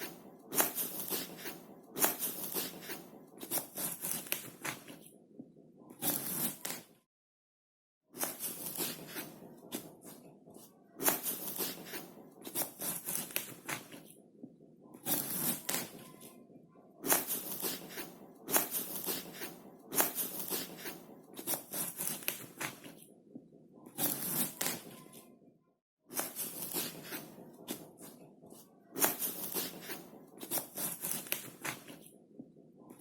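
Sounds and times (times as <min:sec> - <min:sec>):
knife slicing fruit: 0:06.0 - 0:06.8.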